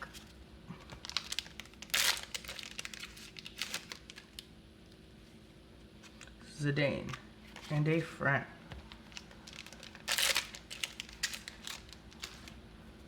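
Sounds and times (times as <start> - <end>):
plastic foil wrapper crinkling: 1.0 - 4.5, 8.9 - 12.6.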